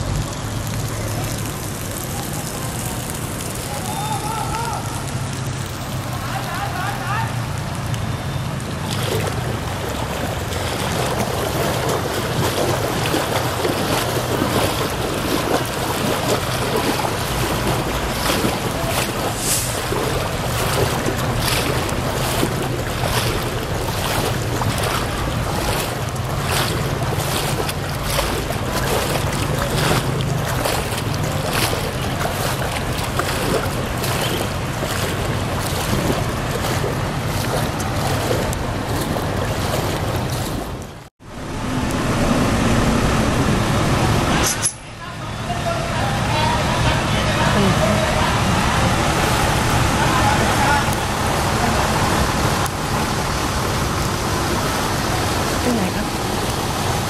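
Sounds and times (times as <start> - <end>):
water rushing and splashing: 0.0 - 57.0
engine running: 7.5 - 57.0
wind buffeting microphone: 9.0 - 44.4.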